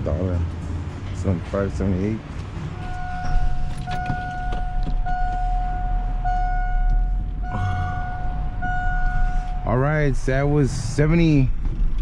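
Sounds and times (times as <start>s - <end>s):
electronic warning beeps: 2.8s - 9.7s.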